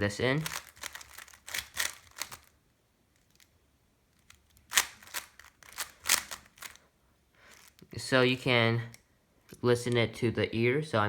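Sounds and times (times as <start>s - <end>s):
speed cube clicking twists: 0.4s - 2.5s, 4.2s - 6.8s, 7.5s - 7.8s.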